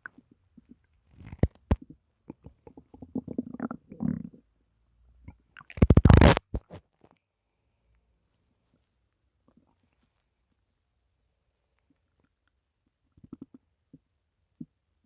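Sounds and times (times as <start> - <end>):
stomach gurgling and rumbling: 0.0 - 4.6, 5.2 - 6.9, 12.0 - 15.0.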